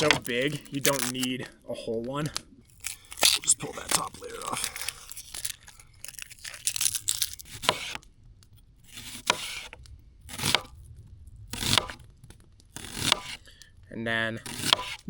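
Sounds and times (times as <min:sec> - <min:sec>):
onion skin peeling and tearing: 0:00.0 - 0:01.5, 0:02.3 - 0:10.8, 0:11.4 - 0:13.8, 0:14.4 - 0:15.0.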